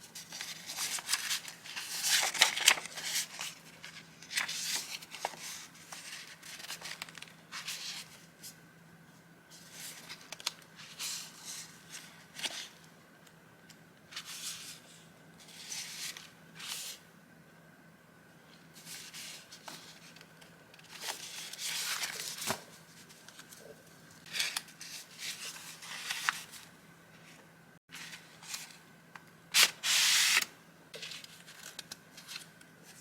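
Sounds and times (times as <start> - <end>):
paper rustling and crinkling: 0.1 - 8.6, 9.5 - 12.8, 18.8 - 28.8, 29.6 - 33.0.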